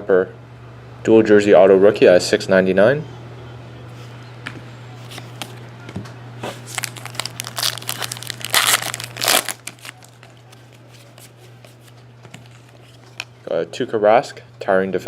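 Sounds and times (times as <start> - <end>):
plastic wrapper tearing and crinkling: 6.6 - 10.7.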